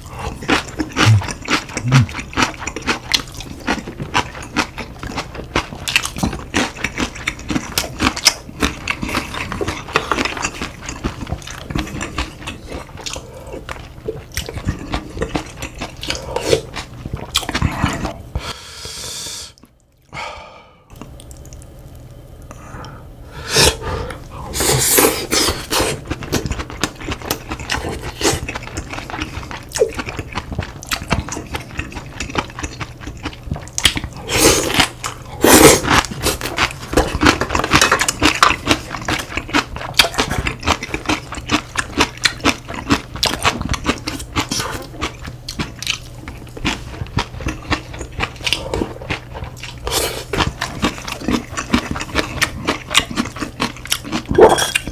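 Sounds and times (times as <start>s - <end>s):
low steady hum: 0.0s - 54.9s
person chewing and crunching food: 0.0s - 54.9s.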